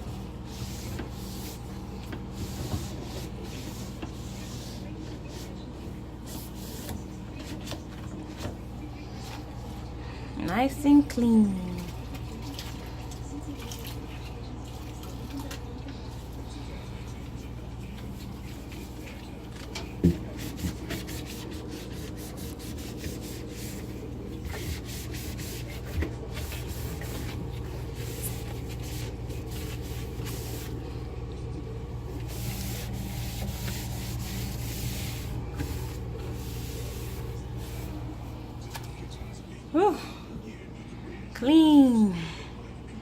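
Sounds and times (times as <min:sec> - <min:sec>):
cloth wiping a surface: 0:00.0 - 0:08.5, 0:17.8 - 0:31.0, 0:32.0 - 0:38.6
steady low hum: 0:00.0 - 0:43.0.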